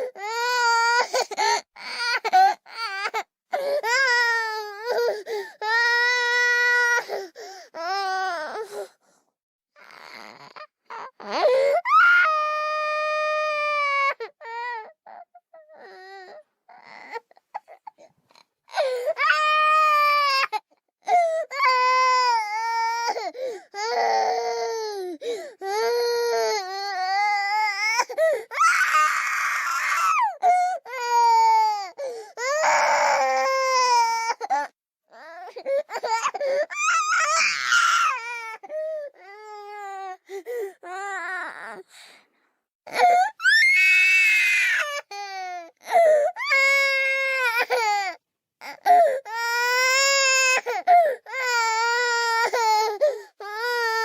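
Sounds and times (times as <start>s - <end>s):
sobbing breaths: 35.5s - 36.7s
girl screaming cries: 36.1s - 38.6s.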